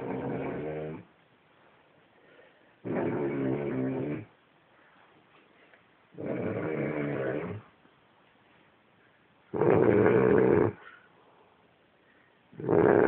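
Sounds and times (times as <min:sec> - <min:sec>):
pig snoring: 0:00.0 - 0:01.1, 0:02.8 - 0:04.3, 0:06.2 - 0:07.6, 0:09.5 - 0:10.8, 0:12.6 - 0:13.0.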